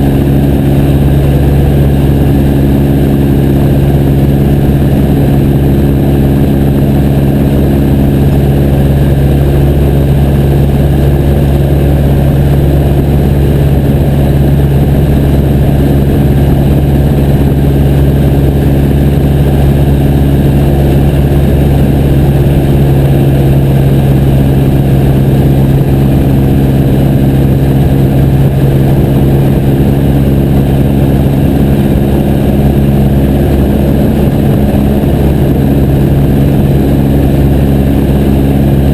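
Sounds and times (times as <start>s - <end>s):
airplane engine droning: 0.0s - 38.9s.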